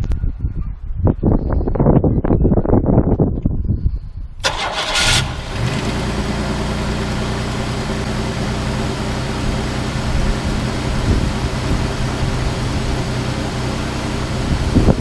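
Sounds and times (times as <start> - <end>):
car engine starting and idling: 4.4 - 15.0.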